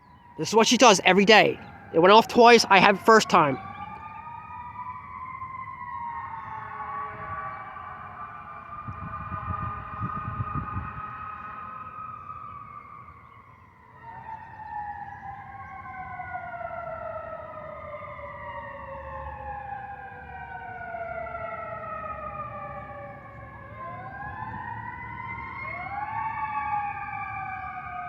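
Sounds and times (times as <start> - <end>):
fire sirens wailing: 0.0 - 28.0.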